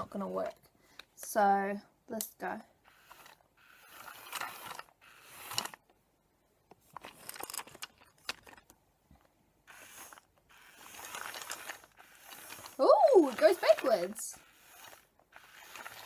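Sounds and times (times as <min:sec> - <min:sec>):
toy motor whirring and clicking: 0:00.0 - 0:00.6, 0:02.2 - 0:05.9, 0:07.0 - 0:08.7, 0:09.6 - 0:16.0.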